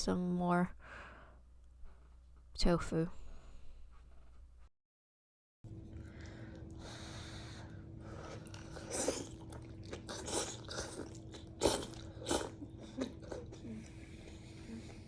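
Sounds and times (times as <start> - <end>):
person chewing food: 5.7 - 15.0.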